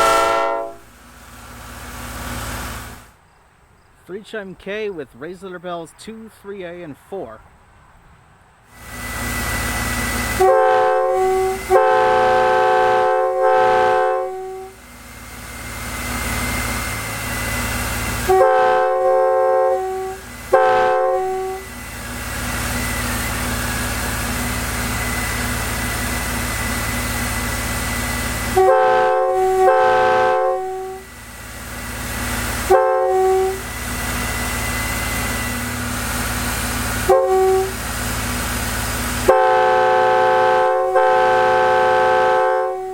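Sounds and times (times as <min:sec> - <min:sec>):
air horn blasts: 0:00.0 - 0:00.9, 0:10.2 - 0:14.8, 0:18.1 - 0:21.8, 0:28.4 - 0:31.1, 0:32.6 - 0:33.8, 0:37.0 - 0:37.8, 0:39.2 - 0:42.9.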